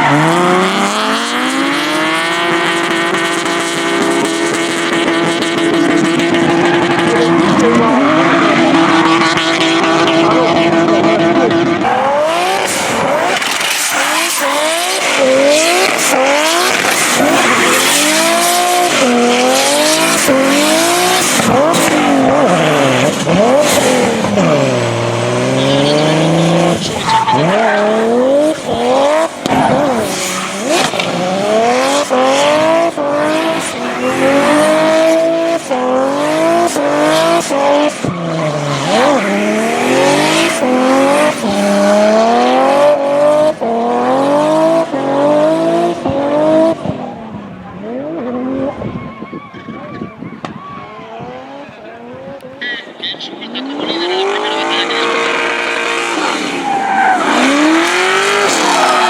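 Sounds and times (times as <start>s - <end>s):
car engine revving hard: 0.0s - 47.2s, 53.5s - 59.0s
tyres squealing: 11.9s - 31.2s, 53.4s - 59.0s.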